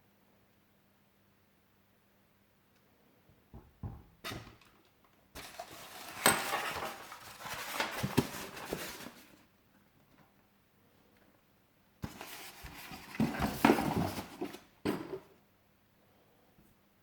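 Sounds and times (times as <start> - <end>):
packaging rustling and crackling: 5.4 - 9.4.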